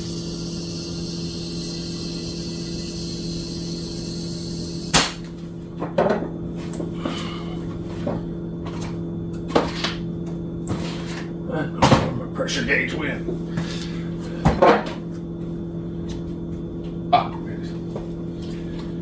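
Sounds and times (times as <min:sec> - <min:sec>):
compressed air hissing: 0:00.0 - 0:05.2
air chuck sharp click: 0:04.9 - 0:05.3.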